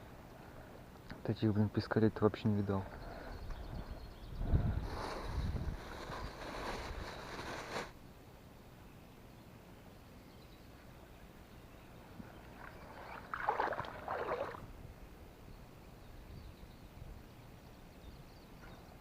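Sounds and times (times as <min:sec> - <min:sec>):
water splashes: 0:12.5 - 0:14.7.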